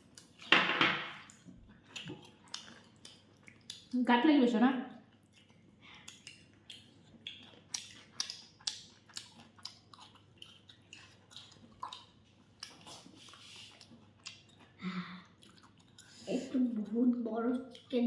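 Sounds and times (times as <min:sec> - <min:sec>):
chewing and biting food: 0:00.0 - 0:00.5, 0:01.2 - 0:04.0, 0:05.0 - 0:16.2.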